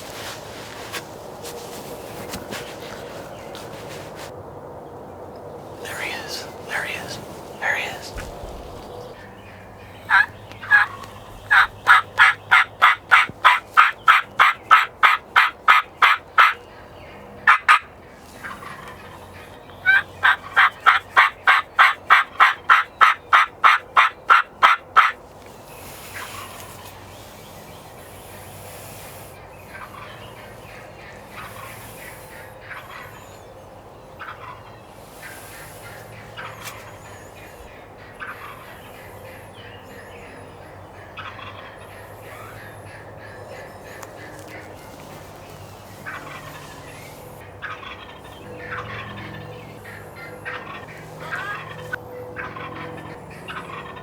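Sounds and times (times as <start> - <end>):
wild turkey yelping: 9.9 - 16.6, 17.4 - 25.2, 25.9 - 33.4, 41.2 - 54.0.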